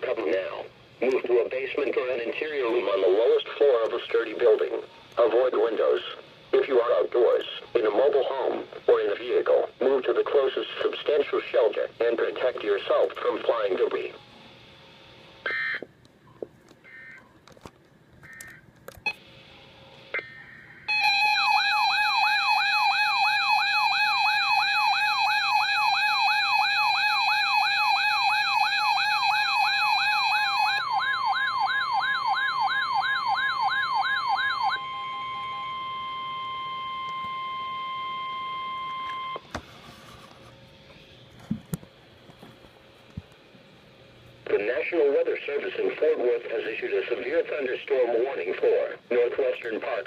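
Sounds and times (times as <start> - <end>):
warbling siren alarm: 15.4 - 15.9, 16.8 - 17.3, 20.1 - 39.4.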